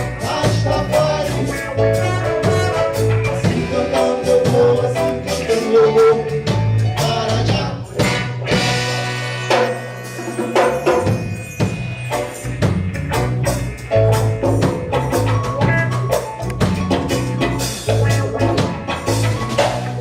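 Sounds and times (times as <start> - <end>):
bass line: 0.0 - 20.0
percussion strikes: 7.9 - 20.0.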